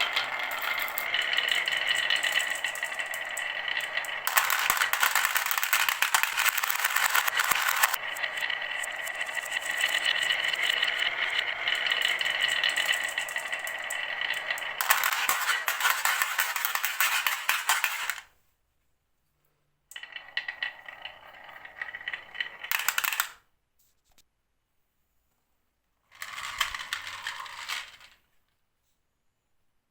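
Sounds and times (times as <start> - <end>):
marbles rolling down wooden run: 0.0 - 18.3, 20.0 - 23.4, 26.2 - 28.3.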